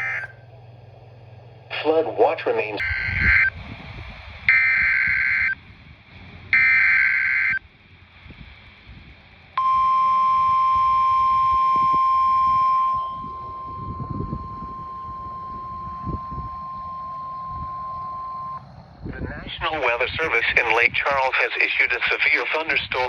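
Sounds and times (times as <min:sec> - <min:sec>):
steady attention tone: 0:00.0 - 0:03.6, 0:09.6 - 0:20.5.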